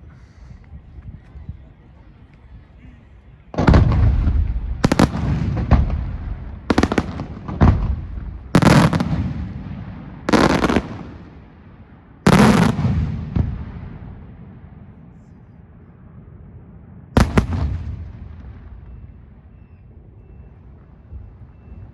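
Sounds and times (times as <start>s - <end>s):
rolling echo: 1.2s - 21.9s
fireworks bursting with loud bangs: 3.5s - 11.6s, 12.2s - 14.6s, 17.2s - 19.1s.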